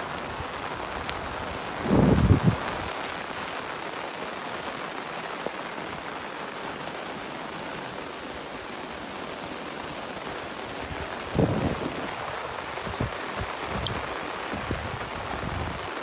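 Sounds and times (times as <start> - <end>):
steady rain falling: 0.0 - 16.0
small tick: 13.7 - 14.0.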